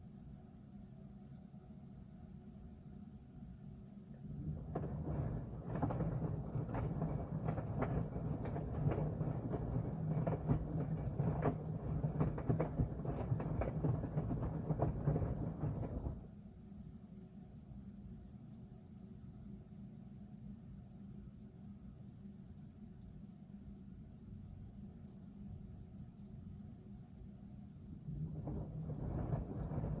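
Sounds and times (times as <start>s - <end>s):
washing machine drum humming: 4.2s - 16.4s, 28.0s - 30.0s.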